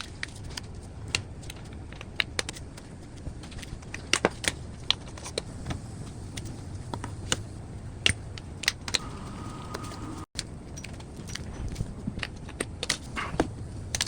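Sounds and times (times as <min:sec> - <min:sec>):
steady low hum: 0:03.0 - 0:14.0
faint steady tone: 0:09.0 - 0:10.3.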